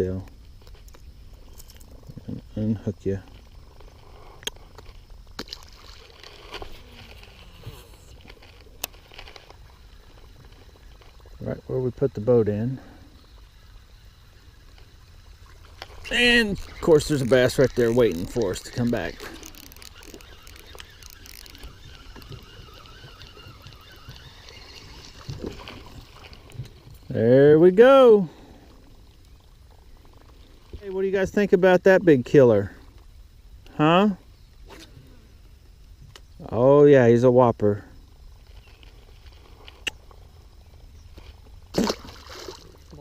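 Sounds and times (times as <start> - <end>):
light water sloshing: 3.2 - 11.5, 38.4 - 43.0.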